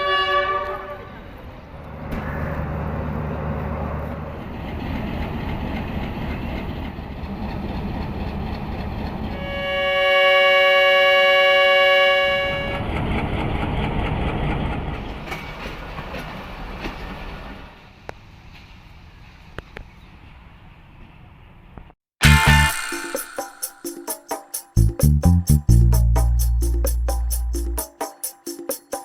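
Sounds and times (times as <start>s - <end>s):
train horn chord: 0.0s - 1.4s, 9.4s - 12.9s
diesel train rumble: 0.0s - 21.1s
train wheel clatter: 3.6s - 9.5s, 12.6s - 19.8s.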